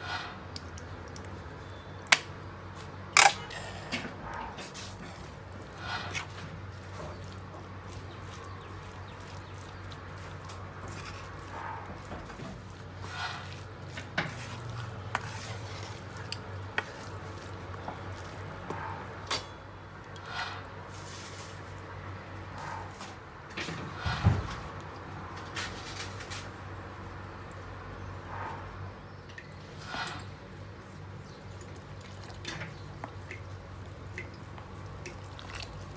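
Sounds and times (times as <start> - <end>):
utensils scraping and tapping dishes: 3.2 - 17.2.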